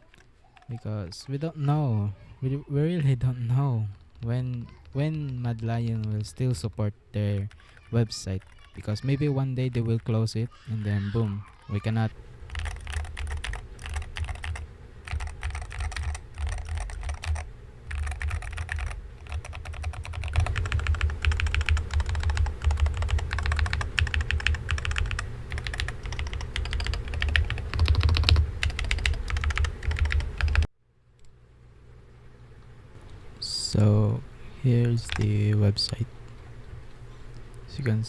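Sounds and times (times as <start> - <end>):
rapid keyboard typing: 3.8 - 10.2, 12.4 - 30.7, 34.7 - 35.4.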